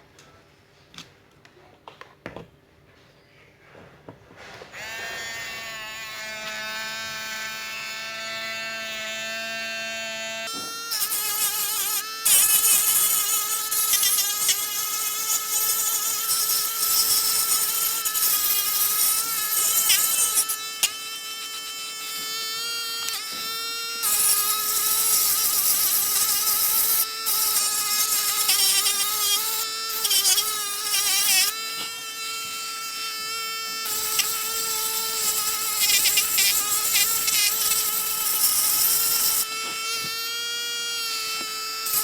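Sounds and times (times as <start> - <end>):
rotary polisher whining: 4.7 - 42.0
gritty sanding hiss: 33.8 - 40.2.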